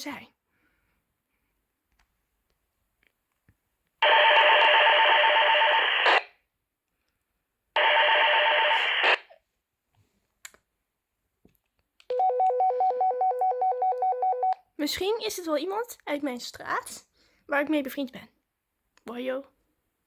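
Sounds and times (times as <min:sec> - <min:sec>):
walkie-talkie static bursts: 0:05.7 - 0:06.3, 0:08.5 - 0:09.4.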